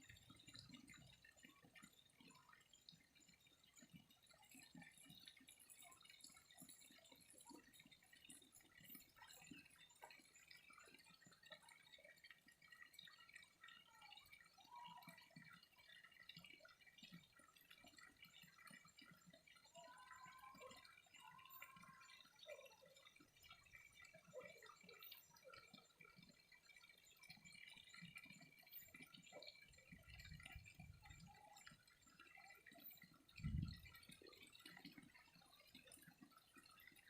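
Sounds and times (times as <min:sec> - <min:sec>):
water dripping and trickling: 0:00.0 - 0:37.0
distant small calls: 0:19.7 - 0:23.0.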